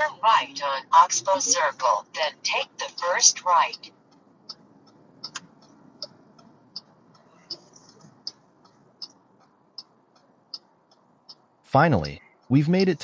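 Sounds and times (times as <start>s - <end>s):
car turn signal ticking: 4.1s - 12.6s.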